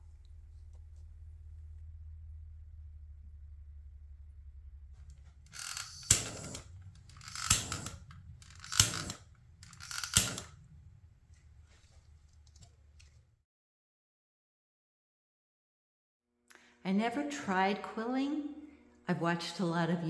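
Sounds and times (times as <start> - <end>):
low hum: 0.0 - 13.4
sharp clicks: 5.4 - 10.7.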